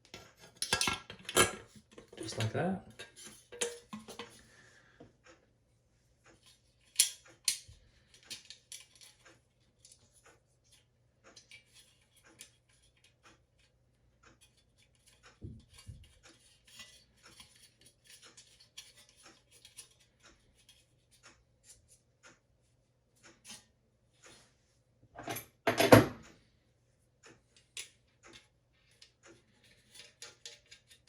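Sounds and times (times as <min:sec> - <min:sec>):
small parts clicking and scraping: 0:00.0 - 0:04.5, 0:06.2 - 0:22.0, 0:27.5 - 0:31.0.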